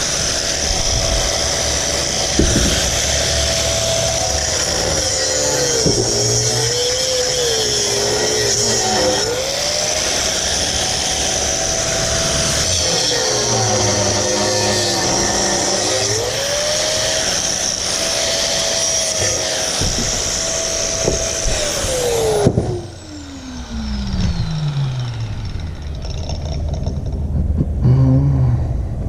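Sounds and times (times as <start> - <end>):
electric power tool motor whining: 0.0 - 27.3
handling noises: 2.2 - 3.8.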